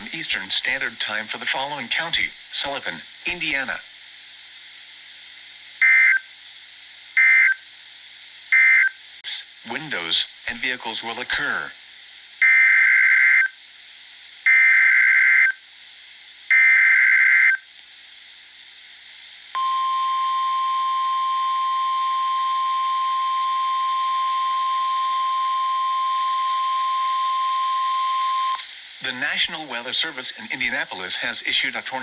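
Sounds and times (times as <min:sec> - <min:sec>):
steady warning alarm tone: 0:19.6 - 0:28.6.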